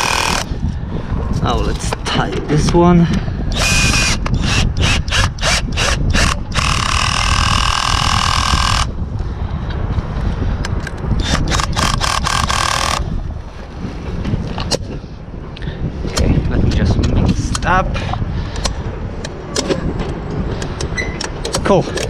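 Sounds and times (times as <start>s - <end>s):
drill clutch clicking: 0.0s - 0.5s, 3.5s - 8.9s, 11.2s - 13.0s
drill motor whining: 0.0s - 0.5s, 3.5s - 8.9s, 11.2s - 13.0s.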